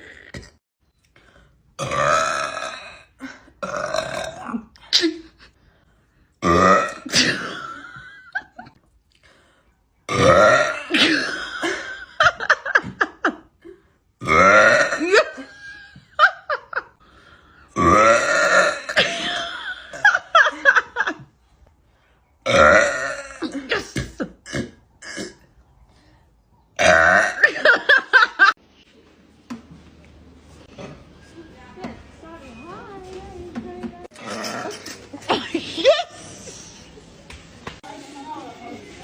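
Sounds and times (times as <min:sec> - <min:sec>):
woman burping loudly: 0:01.8 - 0:04.8, 0:06.4 - 0:08.6, 0:10.1 - 0:13.0, 0:14.2 - 0:15.8, 0:17.7 - 0:20.6, 0:22.4 - 0:25.6, 0:26.8 - 0:28.6, 0:34.1 - 0:36.2.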